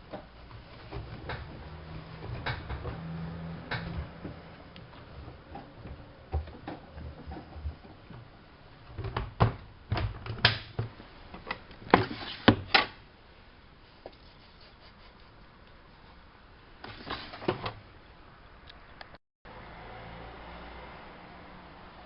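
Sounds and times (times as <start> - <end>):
washing machine clicks and knocks: 2.2 - 4.1.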